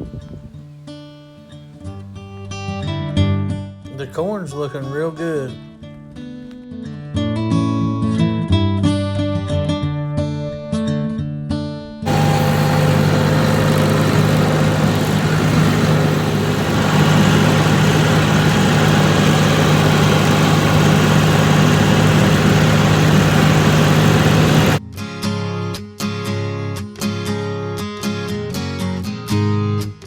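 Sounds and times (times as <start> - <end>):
farm machine engine running: 12.1 - 24.8.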